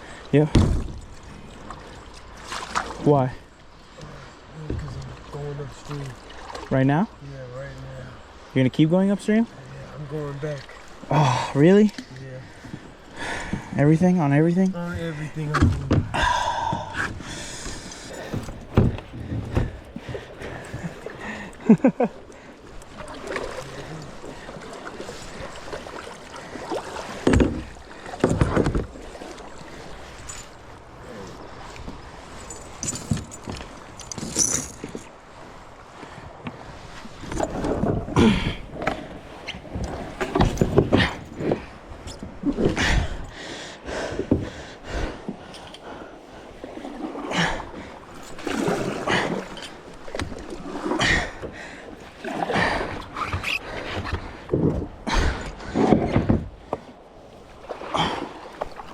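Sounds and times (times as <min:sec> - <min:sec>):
kayak paddle in water: 0:00.0 - 0:58.9.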